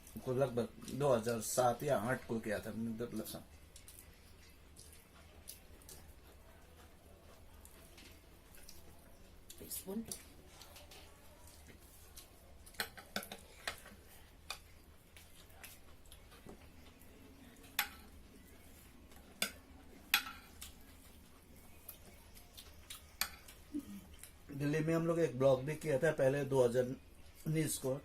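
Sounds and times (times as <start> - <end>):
cutlery clinking on plates: 12.7 - 13.9.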